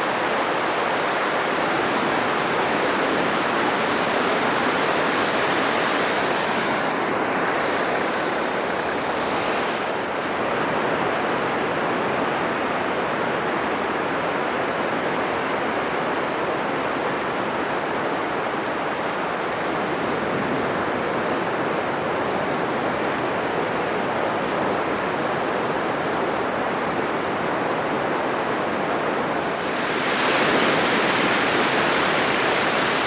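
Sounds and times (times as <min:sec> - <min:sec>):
surf breaking on sandy beach: 0:01.3 - 0:10.6, 0:28.7 - 0:33.0.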